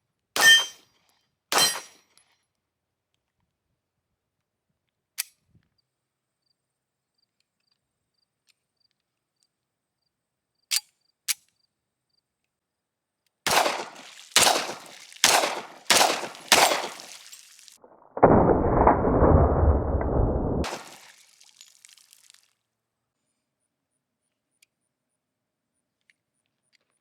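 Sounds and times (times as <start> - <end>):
pistol shots echoing: 0.4 - 0.7, 1.5 - 1.9, 13.5 - 17.4
metallic clicks of pistol: 5.2 - 5.5, 10.7 - 11.6.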